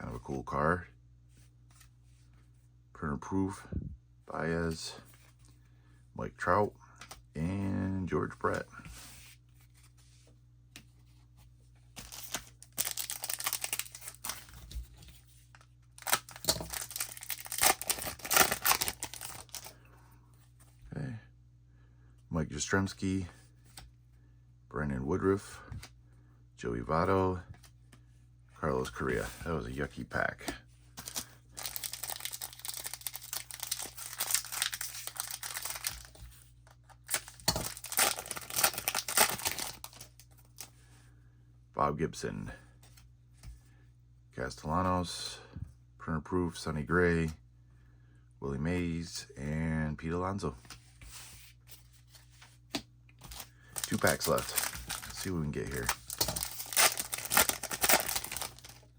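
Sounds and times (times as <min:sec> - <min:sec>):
wrapper tearing and crinkling: 0:12.1 - 0:14.5, 0:16.0 - 0:19.7, 0:31.0 - 0:36.2, 0:37.0 - 0:40.2, 0:53.3 - 0:58.9.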